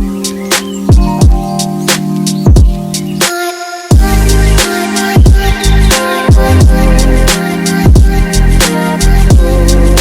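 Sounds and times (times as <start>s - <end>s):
electronic hip-hop music: 0.0s - 10.0s
held synth chords: 0.0s - 10.0s
deep bass kicks: 6.3s - 7.2s.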